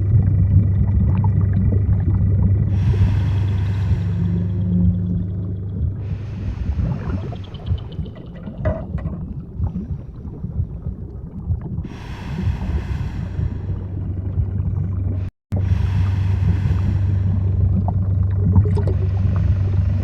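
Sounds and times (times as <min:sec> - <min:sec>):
underwater churning rumble: 0:00.0 - 0:20.0
water hiss: 0:02.7 - 0:08.4, 0:11.9 - 0:14.2, 0:15.6 - 0:17.9.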